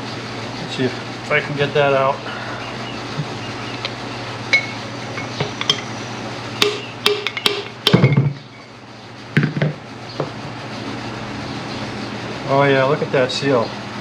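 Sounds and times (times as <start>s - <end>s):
hand tool knocking on metal: 6.6s - 8.4s.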